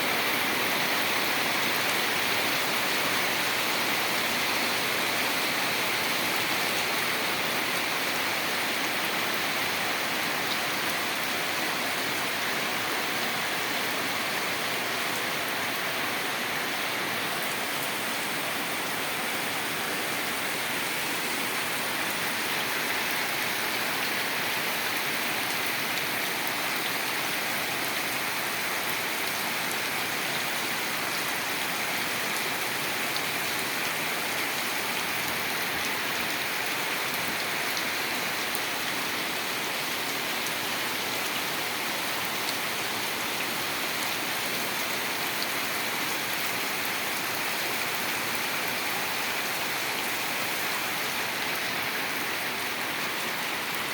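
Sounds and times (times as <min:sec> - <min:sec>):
heavy rain pouring: 0:00.0 - 0:53.9.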